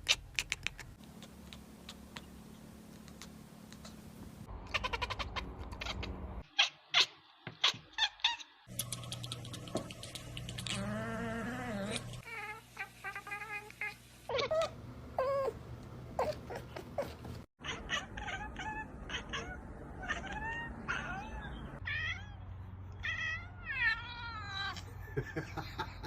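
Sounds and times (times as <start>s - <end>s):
cats meowing and caterwauling: 4.6s - 8.4s, 10.4s - 15.6s, 16.2s - 25.0s.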